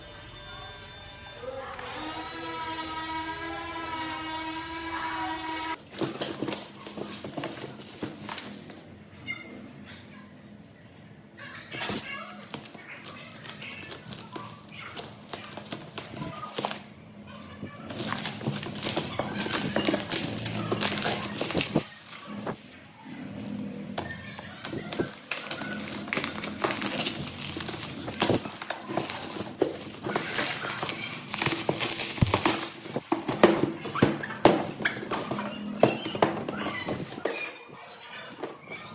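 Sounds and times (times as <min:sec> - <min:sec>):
cardboard and plastic rustling: 0:05.7 - 0:09.1, 0:11.7 - 0:38.9
toy box packaging handled: 0:05.8 - 0:08.9, 0:11.7 - 0:17.0, 0:17.7 - 0:22.8, 0:23.4 - 0:37.6
packaging clicks and taps: 0:17.9 - 0:21.9.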